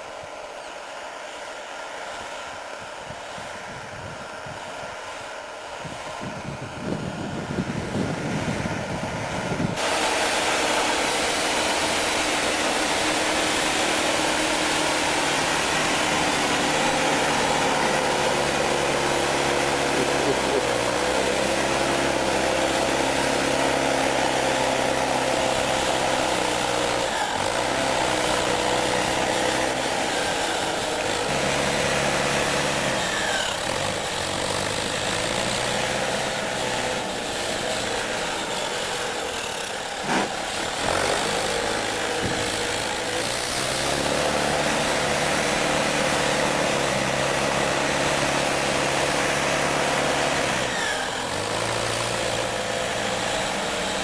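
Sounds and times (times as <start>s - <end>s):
digger diesel engine working: 5.2s - 54.0s.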